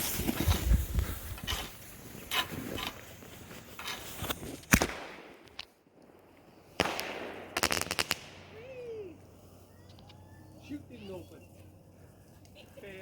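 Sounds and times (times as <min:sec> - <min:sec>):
crackling pops: 0:00.0 - 0:08.7
firework shell bursting: 0:06.7 - 0:08.7
firework launch bang: 0:06.8 - 0:08.5.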